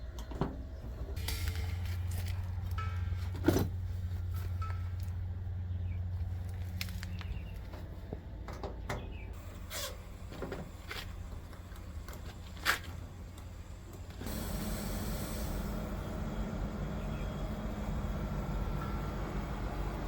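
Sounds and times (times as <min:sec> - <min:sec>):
window air conditioner running: 0:09.4 - 0:20.0.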